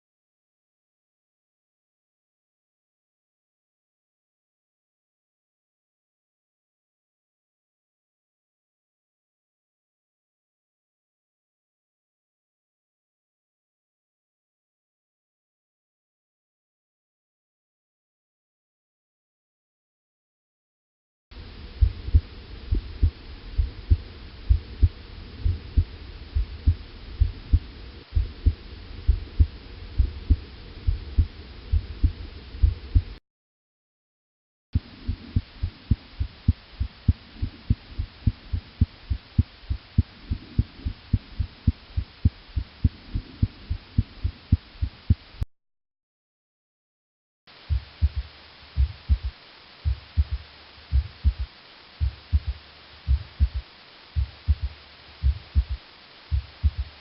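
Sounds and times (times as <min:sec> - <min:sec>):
background hiss: 0:21.4 - 0:33.2, 0:34.8 - 0:45.4, 0:47.5 - 0:57.0
heartbeat thumps: 0:21.6 - 0:33.2, 0:34.8 - 0:45.4, 0:47.7 - 0:57.0.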